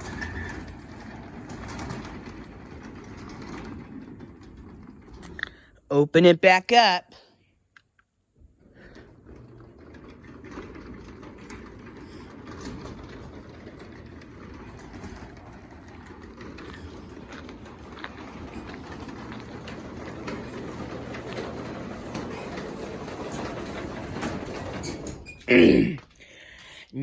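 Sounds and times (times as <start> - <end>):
garage door opener motor hum: 0.0 - 5.7, 8.4 - 25.6
light clicks and rattles: 7.8 - 26.2.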